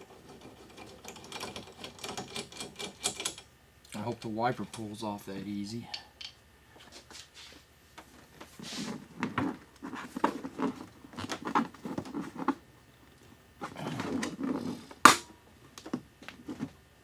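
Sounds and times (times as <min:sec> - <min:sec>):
wiper arm clicking and rattling: 0:00.0 - 0:03.5
scraping and rustling: 0:06.8 - 0:15.0.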